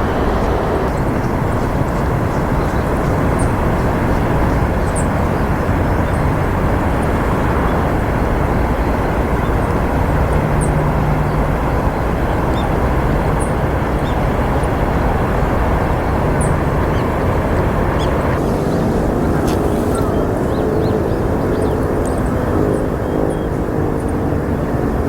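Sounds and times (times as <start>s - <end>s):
outdoor background noise: 0.0s - 25.0s
short high bird calls: 18.0s - 21.1s.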